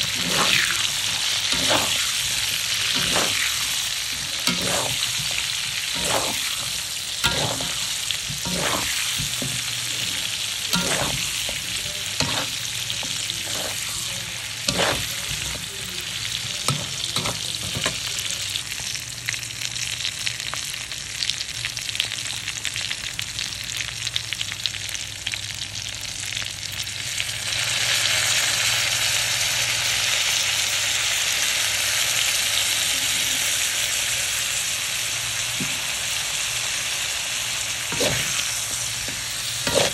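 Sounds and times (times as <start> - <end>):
spatula knocking and scraping pan: 0.0 - 14.0, 14.7 - 15.7, 16.6 - 18.0, 38.0 - 38.4, 39.0 - 39.9
chicken frying in oil: 0.0 - 39.9.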